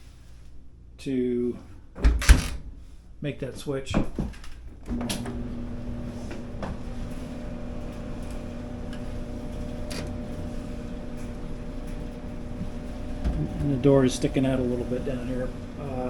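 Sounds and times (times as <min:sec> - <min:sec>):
dryer motor and drum hum: 0:03.9 - 0:16.0.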